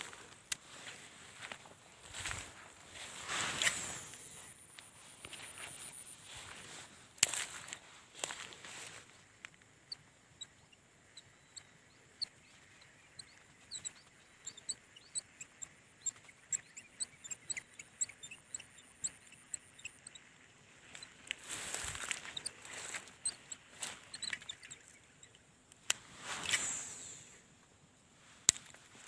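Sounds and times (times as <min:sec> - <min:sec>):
small birds chirping: 0:00.0 - 0:27.5
rushing rustling noise: 0:02.1 - 0:04.5.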